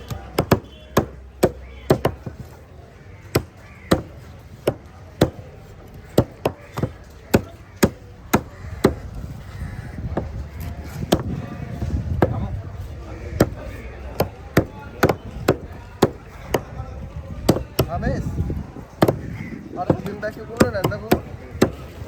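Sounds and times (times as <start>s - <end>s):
knife chopping fish: 19.0s - 22.0s.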